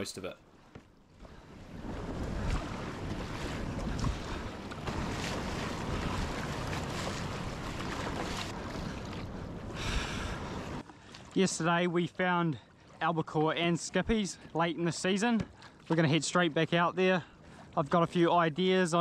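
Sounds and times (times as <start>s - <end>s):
rush of waves and water: 1.1s - 16.8s
wind buffeting microphone: 1.4s - 10.8s.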